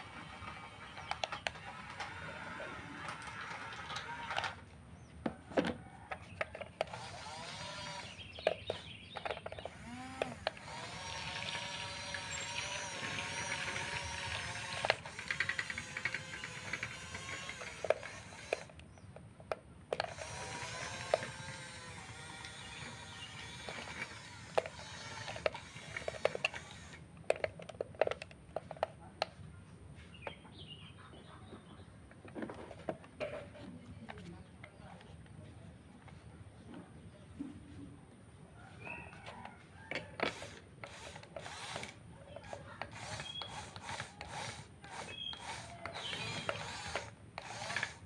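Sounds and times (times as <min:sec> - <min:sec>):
small electric motors whining: 0:00.0 - 0:04.7, 0:06.0 - 0:28.9, 0:39.2 - 0:48.0.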